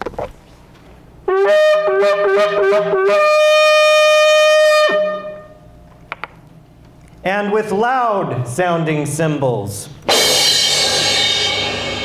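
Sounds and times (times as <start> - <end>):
ram's horn blasts: 1.2 - 5.7.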